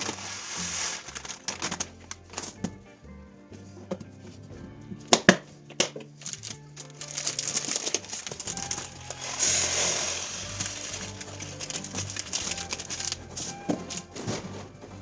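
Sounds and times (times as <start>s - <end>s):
rush of hissing noise: 0.0s - 1.1s, 9.2s - 11.1s
music with low held notes: 0.0s - 15.0s
clicks and knocks: 4.9s - 9.0s.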